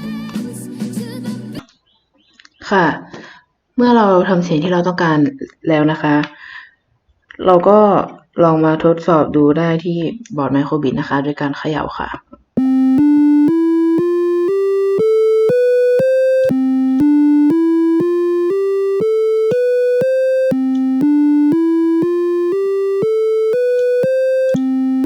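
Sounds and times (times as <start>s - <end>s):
buzzy electronic beeps rising scale: 12.6s - 25.0s.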